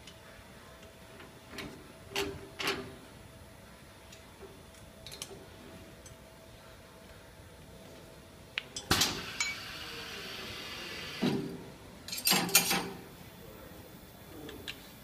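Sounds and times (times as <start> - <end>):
steady hiss: 8.2 - 12.0.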